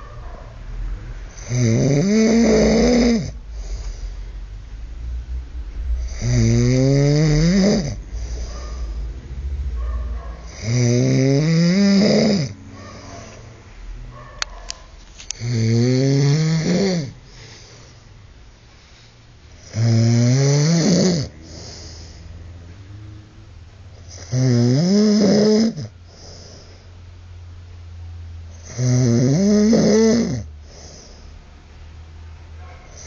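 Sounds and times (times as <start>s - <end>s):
man snoring loudly: 1.3s - 3.4s, 6.0s - 8.0s, 10.5s - 12.6s, 15.4s - 17.2s, 19.6s - 21.9s, 24.1s - 25.9s, 28.6s - 31.0s.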